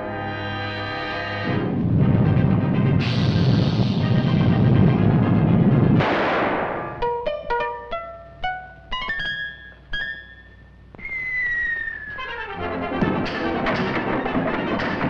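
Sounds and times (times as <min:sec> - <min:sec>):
loud dense rumble: 0:01.5 - 0:07.0
crash: 0:05.9 - 0:07.0
short plucked notes: 0:06.8 - 0:10.4.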